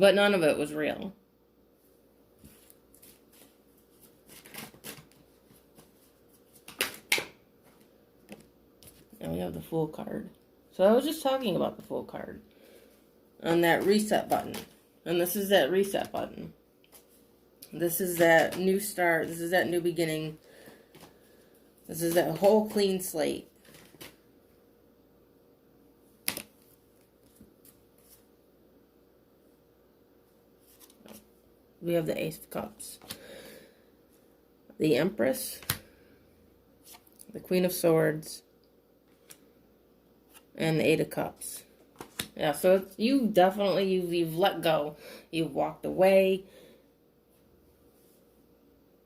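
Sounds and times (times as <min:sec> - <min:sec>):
cards snapping and rustling: 0:04.2 - 0:05.9, 0:06.5 - 0:09.0, 0:23.6 - 0:24.2, 0:26.2 - 0:28.2, 0:41.9 - 0:42.4.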